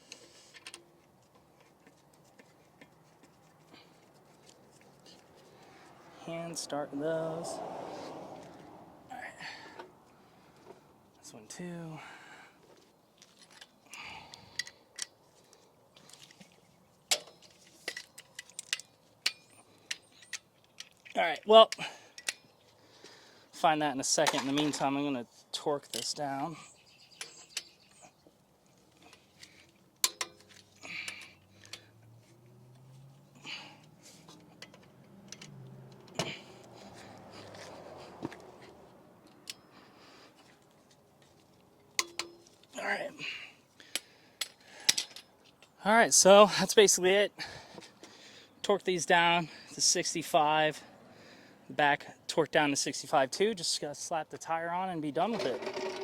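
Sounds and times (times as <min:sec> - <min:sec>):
metallic clicks of bolts and tools: 0:17.1 - 0:22.5, 0:29.1 - 0:31.9, 0:34.2 - 0:36.3, 0:41.8 - 0:42.7, 0:43.8 - 0:45.8.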